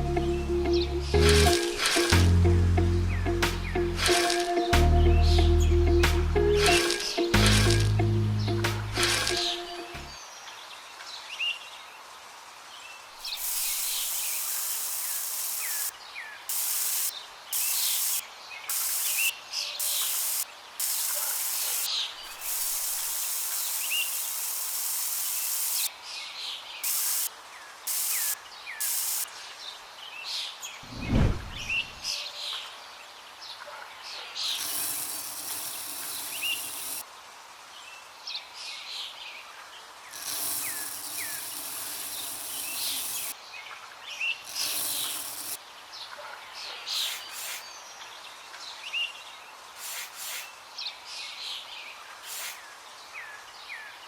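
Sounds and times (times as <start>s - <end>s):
small birds chirping: 12.9s - 32.6s, 40.1s - 45.6s, 46.5s - 54.0s
bursts of hiss: 13.2s - 15.9s, 16.5s - 25.9s, 26.8s - 27.3s, 27.9s - 29.3s, 30.8s - 32.0s, 46.9s - 47.7s, 49.8s - 50.5s, 52.2s - 52.7s
low thump: 30.9s - 31.9s.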